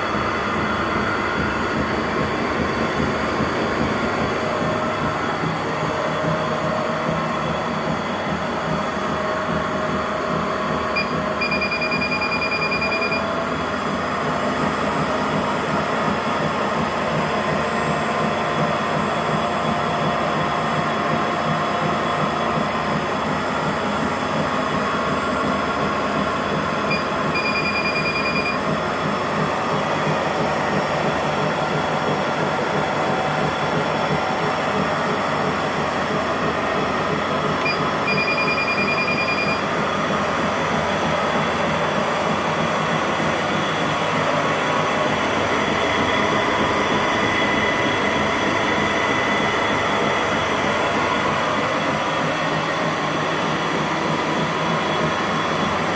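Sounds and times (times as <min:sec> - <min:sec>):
treadmill motor and belt running: 0:00.0 - 0:55.9
high electronic beeping: 0:11.0 - 0:13.2, 0:26.9 - 0:28.6, 0:37.6 - 0:39.6.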